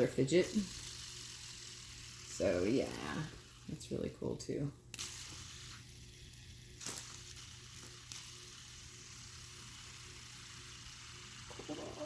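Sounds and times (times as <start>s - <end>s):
hands handling small objects: 6.7s - 8.5s.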